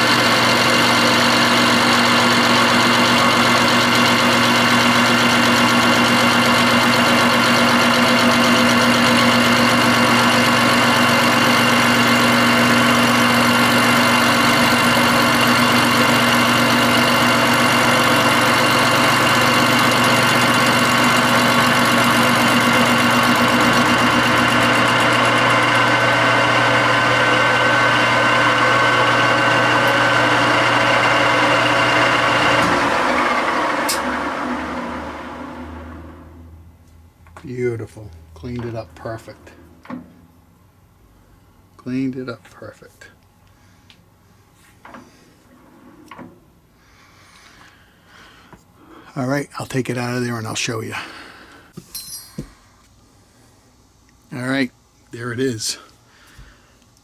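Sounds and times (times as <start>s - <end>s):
metal lathe humming and whining: 0.0s - 36.3s.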